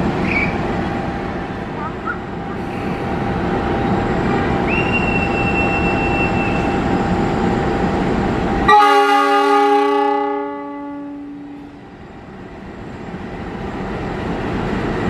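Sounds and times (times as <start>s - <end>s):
train rumbling past: 0.0s - 15.0s
locomotive horn chord: 8.7s - 11.7s.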